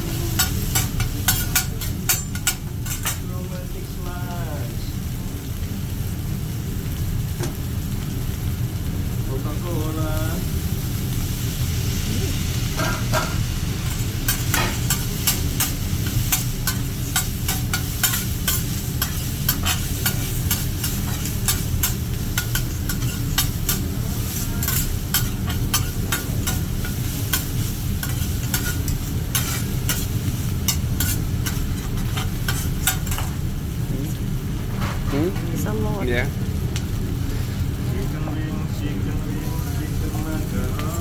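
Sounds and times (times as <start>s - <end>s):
food sizzling on a griddle: 0.0s - 41.0s
metal spatulas scraping steel: 0.2s - 3.2s, 12.8s - 33.4s.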